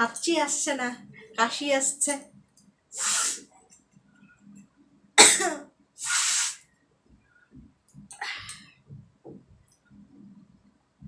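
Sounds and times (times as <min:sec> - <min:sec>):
woman coughing hard: 0:05.2 - 0:05.7.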